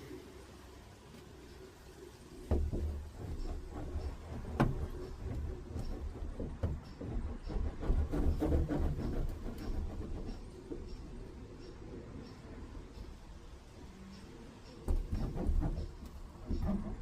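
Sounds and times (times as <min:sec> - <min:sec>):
knocks on sheet-metal van body: 0:02.5 - 0:10.4.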